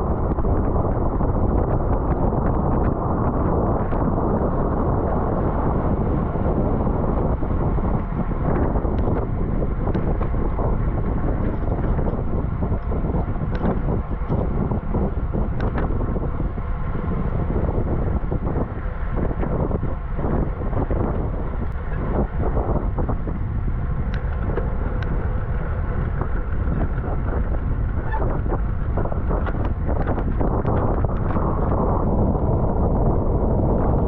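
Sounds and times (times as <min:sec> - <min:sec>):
wind buffeting microphone: 0:00.0 - 0:34.0
small knocks and clicks: 0:13.5 - 0:14.4, 0:29.4 - 0:31.4.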